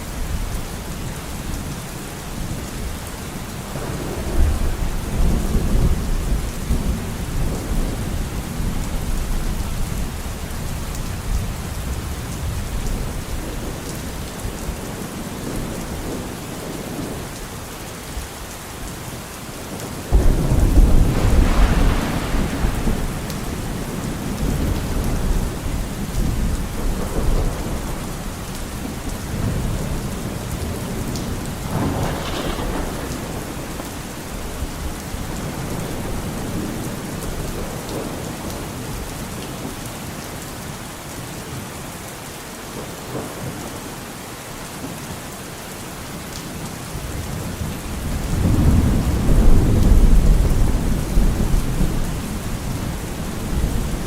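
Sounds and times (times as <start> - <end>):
heavy rain: 0.0 - 54.0
rolling thunder: 3.7 - 14.2, 20.1 - 39.0, 47.5 - 54.0.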